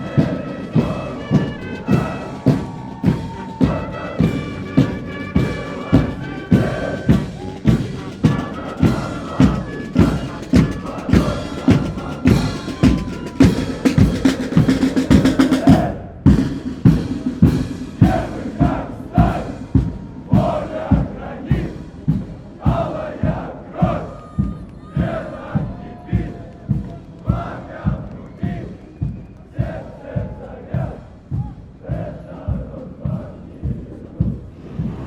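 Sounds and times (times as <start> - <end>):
brass band playing a march: 0.0 - 24.1
snare drum: 0.0 - 33.3
bass drum beat: 0.1 - 35.0.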